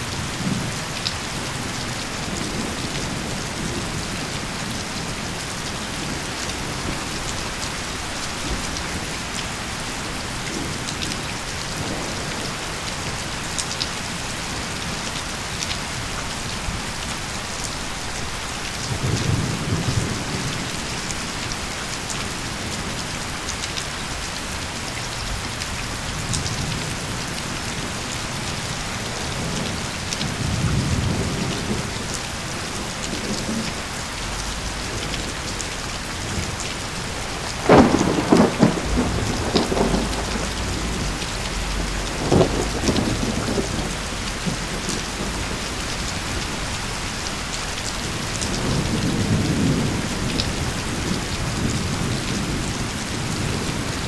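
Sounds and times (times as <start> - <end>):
heavy rain hissing: 0.0 - 54.0
low thunder rolls: 29.0 - 54.0.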